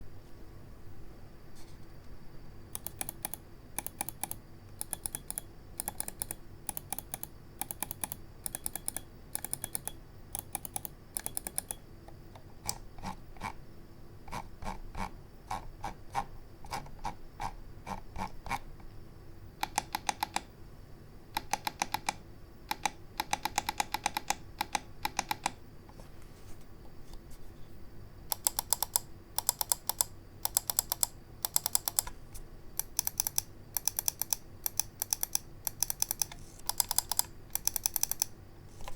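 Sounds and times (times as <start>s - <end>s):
mouse buttons clicking: 2.8s - 11.8s, 28.3s - 32.2s, 32.8s - 38.9s.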